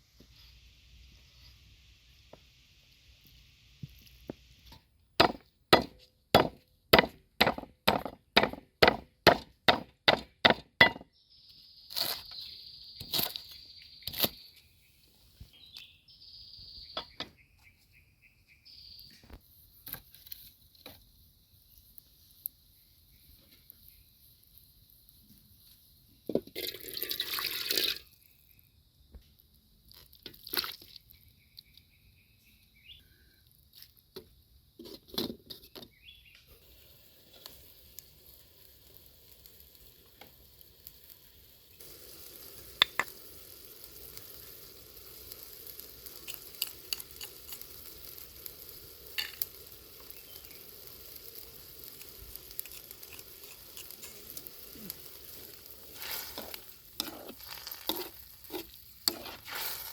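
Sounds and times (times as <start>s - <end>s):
food sizzling in a pan: 36.5s - 59.9s
stirring clicks: 56.0s - 59.9s.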